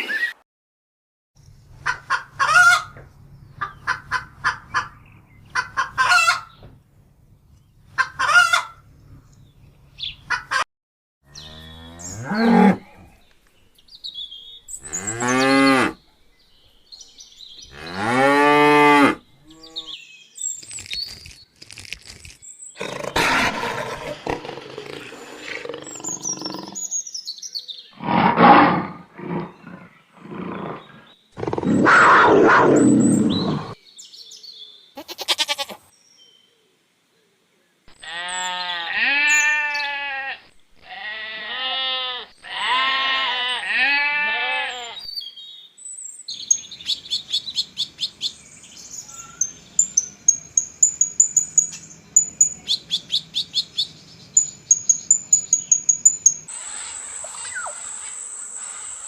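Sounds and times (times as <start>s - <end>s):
high bird chirps: 25.8s - 27.7s, 46.4s - 59.0s
farm animal calls: 35.0s - 35.9s, 37.9s - 45.1s.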